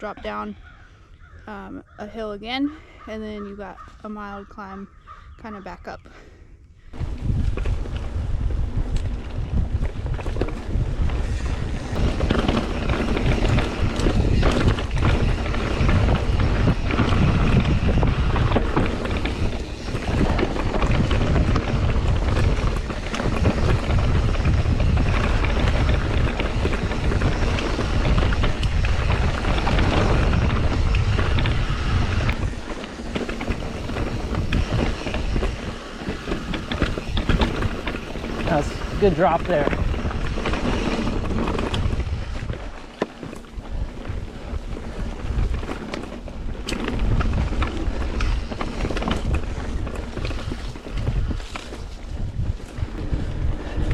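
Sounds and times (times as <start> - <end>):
wind buffeting microphone: 0.0 - 53.9
bike tyres rolling on dirt: 6.2 - 53.9.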